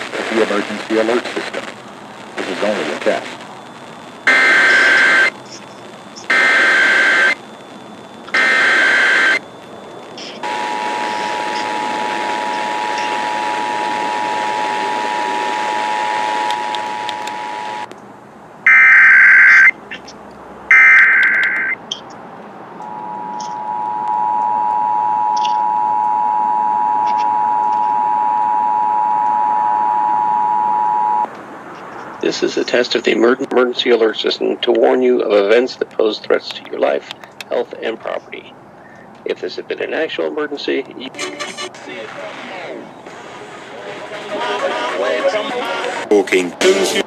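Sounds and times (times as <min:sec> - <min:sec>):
screeching digital data bursts: 0:02.6 - 0:17.9
two-tone attention signal: 0:20.7 - 0:21.8, 0:22.8 - 0:31.3.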